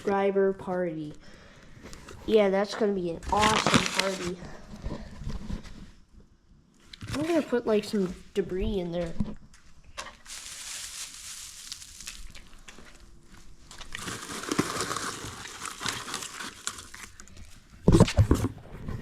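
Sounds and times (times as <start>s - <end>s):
crinkling and rustling debris: 1.8s - 6.0s, 9.0s - 19.0s.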